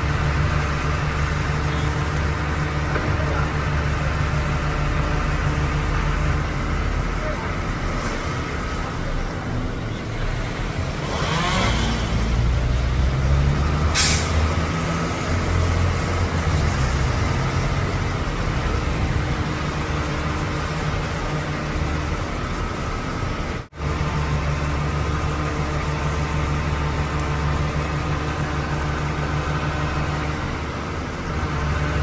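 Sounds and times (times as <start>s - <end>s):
heavy vehicle engine rumbling: 0.0s - 32.0s
short sharp hiss: 14.0s - 14.4s.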